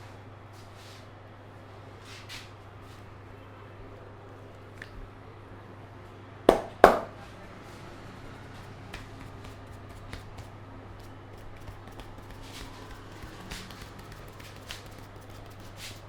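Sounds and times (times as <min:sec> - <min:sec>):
light taps on head: 0:06.5 - 0:07.1, 0:08.9 - 0:10.5, 0:11.4 - 0:15.6
fingers rubbing hair and scalp: 0:08.9 - 0:16.0.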